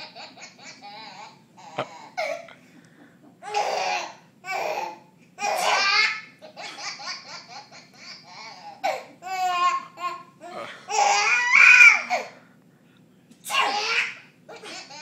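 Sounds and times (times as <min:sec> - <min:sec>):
baby laughing: 0:00.0 - 0:02.6, 0:03.4 - 0:10.3, 0:13.6 - 0:15.0.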